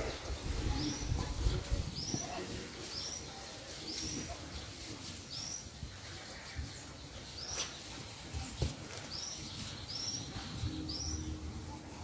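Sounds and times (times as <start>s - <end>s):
bird chirping: 6.7s - 11.9s.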